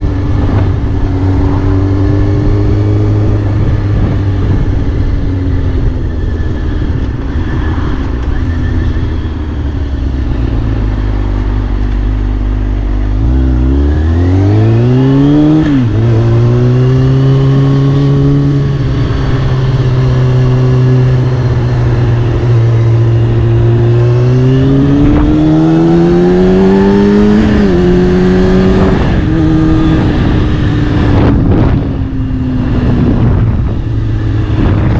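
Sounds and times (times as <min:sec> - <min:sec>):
sport bike engine revving: 0:13.0 - 0:31.8.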